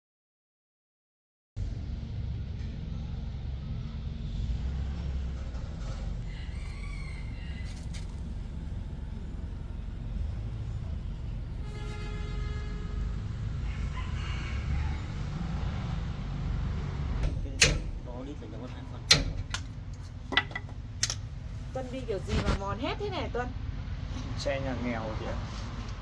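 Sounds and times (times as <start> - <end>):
engine idling: 1.6 - 22.2
rooster crowing: 6.0 - 8.6, 13.5 - 16.2.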